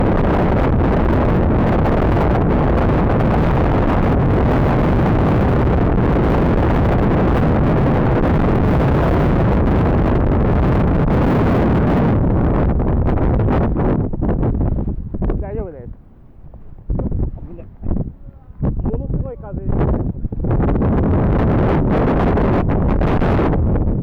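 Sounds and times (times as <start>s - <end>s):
strong wind buffeting microphone: 0.0s - 24.0s.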